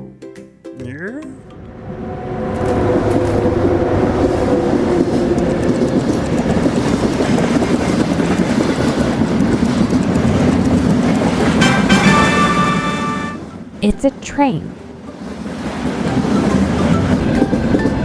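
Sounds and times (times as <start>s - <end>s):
train rumbling on track: 1.4s - 18.0s
wheels clicking over rail joints: 2.6s - 12.7s, 15.2s - 18.0s.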